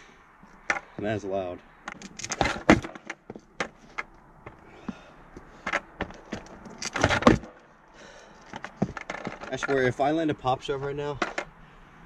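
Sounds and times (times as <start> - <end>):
skateboard clattering on hard ground: 1.9 - 4.1, 5.6 - 7.6, 8.5 - 10.0.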